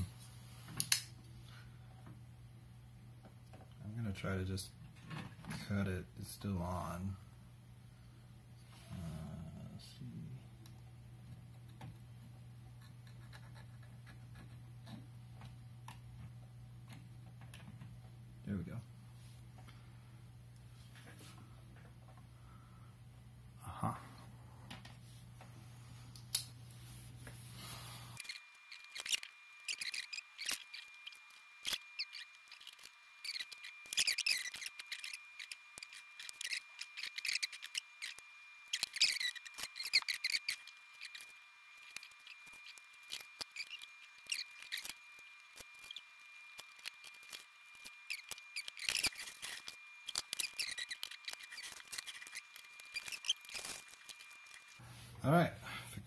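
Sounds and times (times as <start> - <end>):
hand tools clicking and scraping: 28.2 - 54.8.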